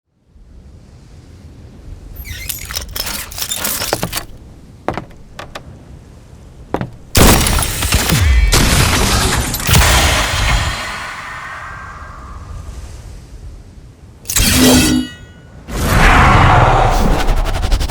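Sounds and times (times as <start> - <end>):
sharp cracks and clatter: 2.3 - 4.4.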